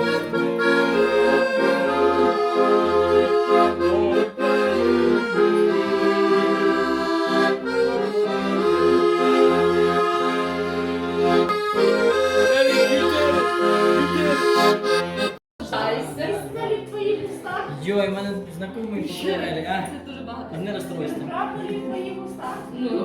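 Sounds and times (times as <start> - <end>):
accordion music: 0.0 - 15.9.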